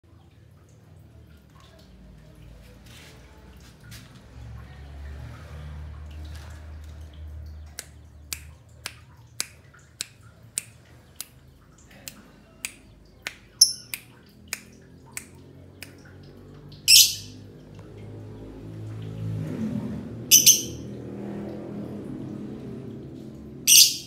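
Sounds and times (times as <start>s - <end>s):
lovebird harsh call: 16.9s - 17.3s, 20.3s - 20.8s, 23.7s - 24.0s.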